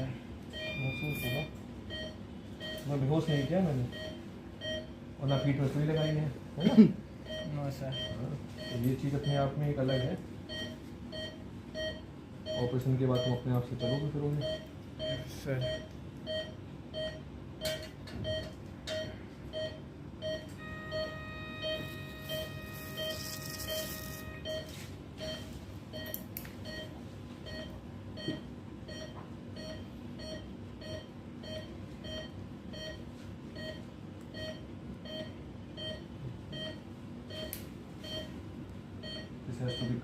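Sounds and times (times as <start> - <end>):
patient monitor beeping: 0.0 - 38.4, 39.0 - 40.0
steady higher tone: 20.6 - 24.8.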